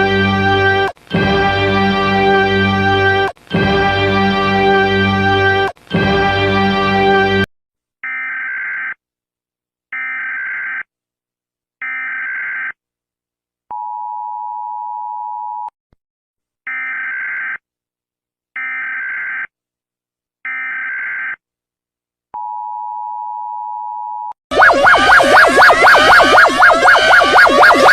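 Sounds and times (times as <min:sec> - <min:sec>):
screeching digital data bursts: 0:24.6 - 0:27.9.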